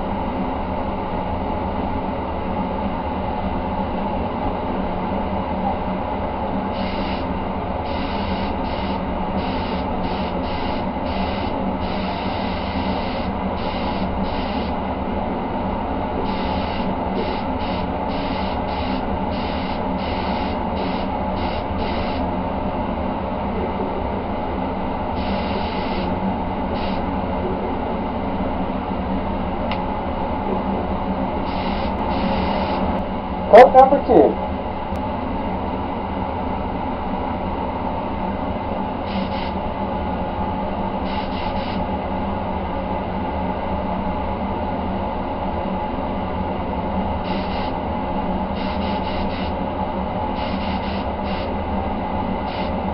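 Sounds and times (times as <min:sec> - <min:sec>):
steady machine hum: 0:00.0 - 0:52.9
spray gun hissing bursts: 0:06.8 - 0:14.8, 0:16.3 - 0:22.2, 0:25.2 - 0:26.1, 0:26.7 - 0:27.0, 0:31.4 - 0:33.0, 0:39.1 - 0:39.6, 0:41.0 - 0:41.8, 0:47.2 - 0:47.8, 0:48.5 - 0:49.6, 0:50.3 - 0:51.5, 0:52.4 - 0:52.8.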